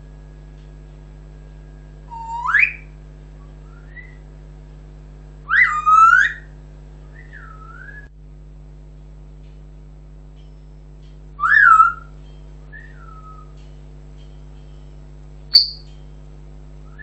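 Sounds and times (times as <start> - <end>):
parrot whistling: 5.5 - 6.5, 11.4 - 12.1, 15.5 - 15.8
faint short chirp: 15.5 - 15.9.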